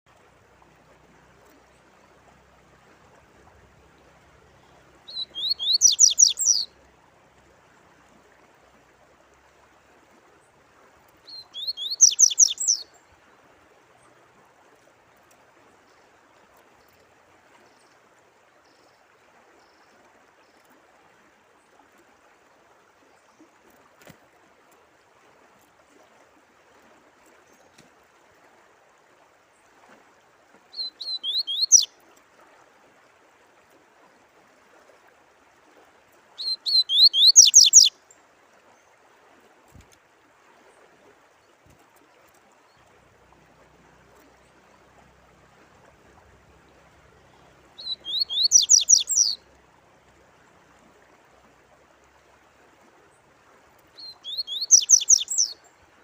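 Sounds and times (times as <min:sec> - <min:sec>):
trickle of running water: 0:00.1 - 0:56.0
songbird singing: 0:03.4 - 0:06.9, 0:11.2 - 0:13.2, 0:30.7 - 0:32.0, 0:36.4 - 0:38.1, 0:46.5 - 0:49.6, 0:53.9 - 0:55.9.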